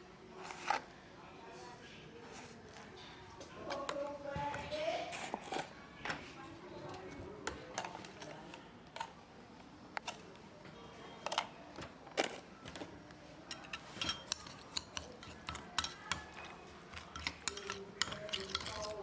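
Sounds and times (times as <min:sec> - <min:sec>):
utensils clinking against a dish: 0:06.9 - 0:09.1, 0:12.2 - 0:19.0.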